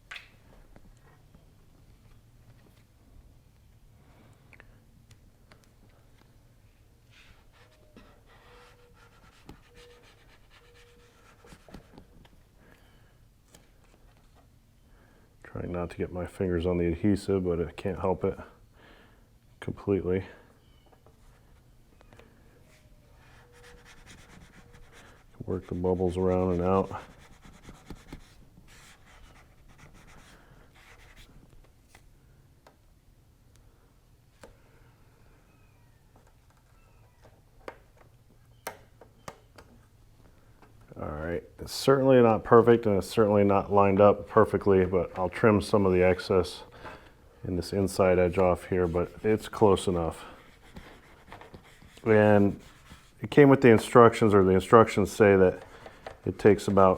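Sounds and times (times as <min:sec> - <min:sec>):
rubbing and swishing of decal: 0:07.1 - 0:12.2, 0:22.7 - 0:32.0, 0:48.0 - 0:56.9
soft breathing: 0:46.7 - 0:47.4.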